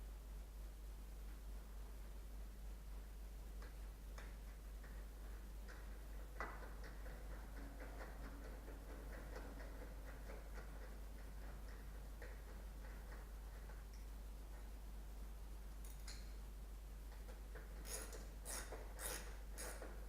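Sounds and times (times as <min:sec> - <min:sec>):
tools clicking and tapping: 0:03.6 - 0:14.7, 0:15.8 - 0:16.4, 0:17.1 - 0:20.0.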